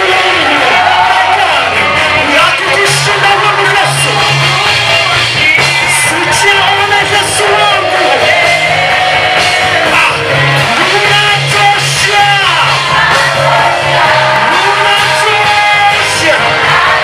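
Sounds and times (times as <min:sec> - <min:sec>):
band with bass and percussion: 0:00.0 - 0:17.0
group singing gospel song: 0:07.2 - 0:10.6, 0:12.5 - 0:17.0.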